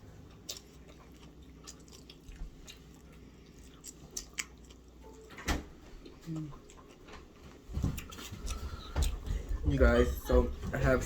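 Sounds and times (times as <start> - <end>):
chewing and eating: 0.0 - 11.0.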